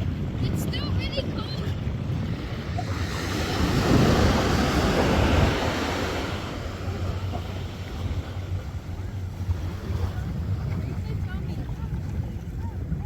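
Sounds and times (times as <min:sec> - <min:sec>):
ocean surf washing: 0:00.0 - 0:13.0
wind buffeting microphone: 0:00.0 - 0:13.0.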